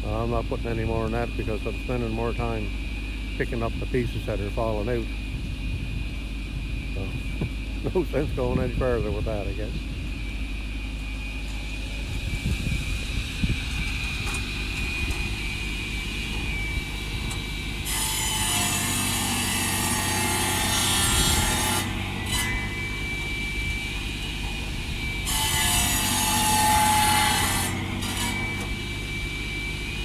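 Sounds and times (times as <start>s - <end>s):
diesel tractor running: 6.8s - 17.9s
saw cutting logs: 14.6s - 30.0s.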